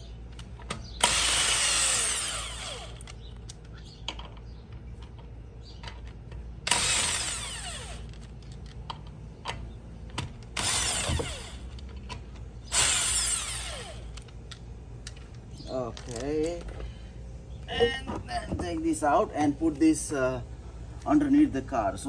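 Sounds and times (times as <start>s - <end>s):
impact wrench bursts: 1.0s - 3.2s, 6.6s - 8.2s, 10.5s - 11.7s, 12.6s - 14.2s.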